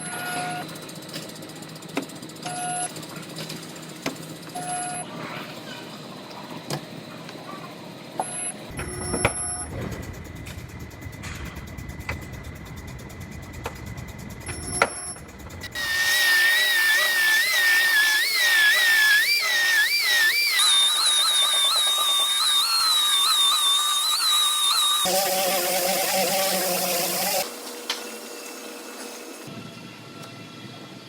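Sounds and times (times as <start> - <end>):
power tool whining: 8.3 - 29.5.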